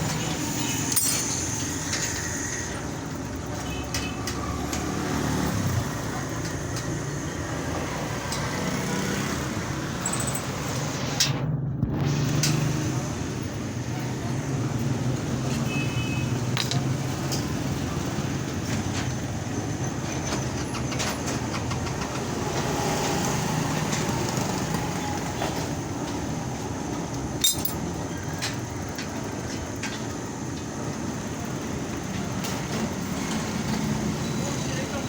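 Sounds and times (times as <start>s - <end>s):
light clicks and clinks: 0.9s - 2.1s, 27.4s - 27.9s.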